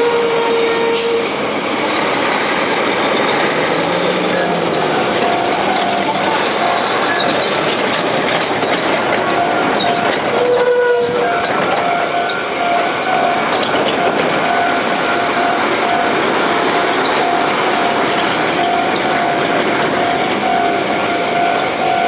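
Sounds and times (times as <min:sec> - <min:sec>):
diesel locomotive engine and wheels: 0:00.0 - 0:22.0
level crossing warning bell: 0:04.3 - 0:07.9, 0:08.5 - 0:22.0.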